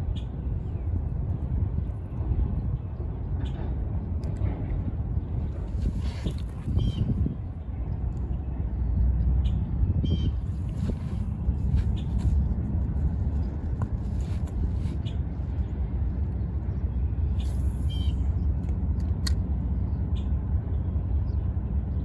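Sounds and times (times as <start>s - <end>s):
steady low rumble: 0.0s - 22.0s.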